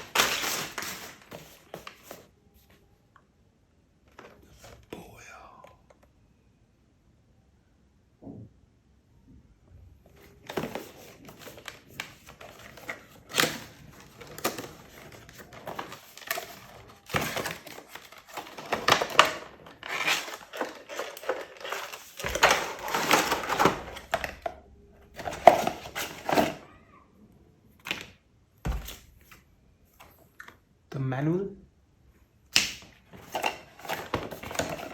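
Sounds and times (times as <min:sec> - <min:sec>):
packaging crinkling: 0:00.0 - 0:02.2, 0:10.2 - 0:26.6, 0:32.8 - 0:34.9
cardboard box rustling and scraping: 0:10.4 - 0:24.4, 0:33.2 - 0:34.9.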